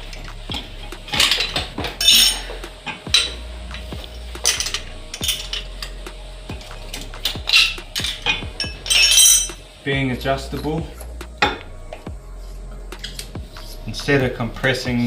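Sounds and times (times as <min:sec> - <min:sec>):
metal tools clinking and knocking: 0:00.6 - 0:03.4, 0:07.2 - 0:09.6.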